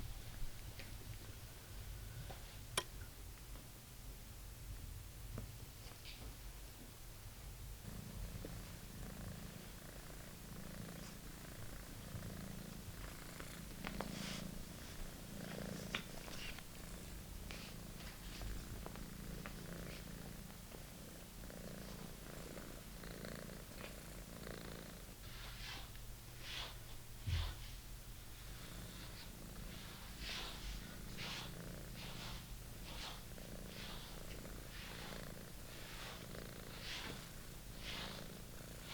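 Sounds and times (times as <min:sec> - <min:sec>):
kitten purring: 0:07.8 - 0:26.7, 0:28.4 - 0:38.9.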